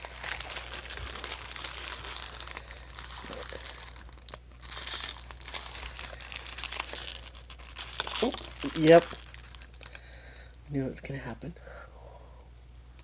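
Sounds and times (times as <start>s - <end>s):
plastic wrapper crinkling: 0.0s - 10.1s.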